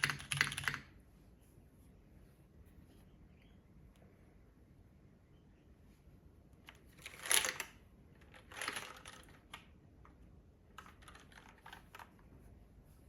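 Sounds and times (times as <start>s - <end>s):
mechanical keyboard clacking: 0.0s - 0.9s.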